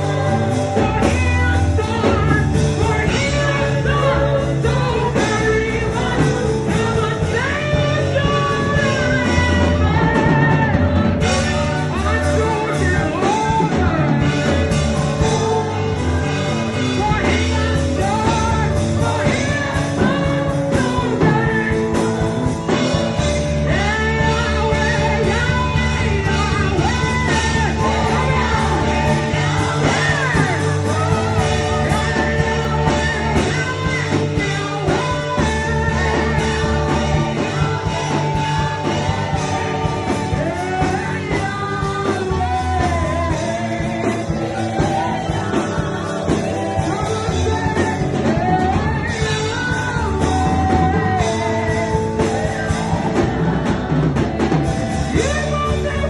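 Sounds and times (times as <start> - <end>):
band accompaniment with bass: 0.0 - 56.0
person singing gospel: 0.0 - 56.0.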